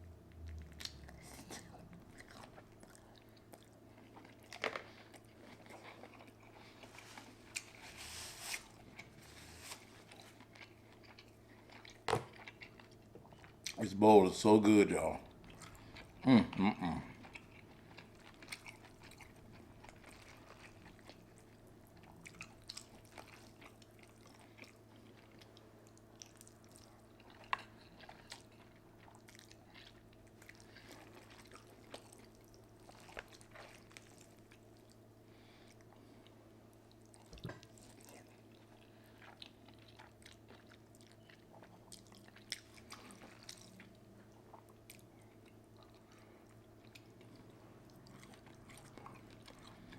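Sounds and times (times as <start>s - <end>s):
faint steady hum: 0.0s - 49.9s
chewing and wet mouth sounds: 0.2s - 49.9s.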